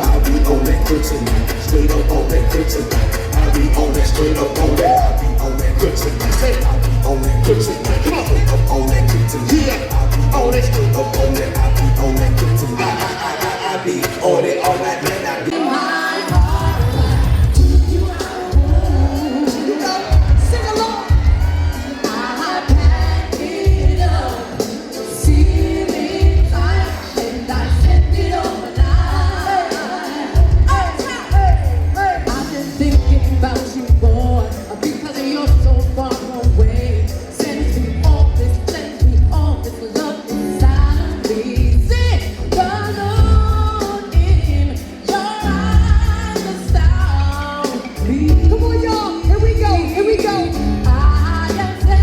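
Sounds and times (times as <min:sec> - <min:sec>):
heavy bass beat: 0:00.0 - 0:15.2, 0:16.3 - 0:22.0, 0:22.7 - 0:24.6, 0:25.2 - 0:29.7, 0:30.3 - 0:34.7
person singing: 0:00.0 - 0:52.0.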